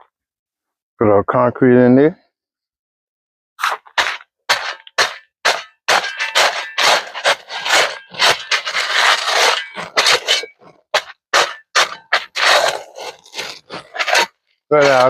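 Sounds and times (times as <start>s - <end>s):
gritty scraping of concrete: 3.6s - 15.0s.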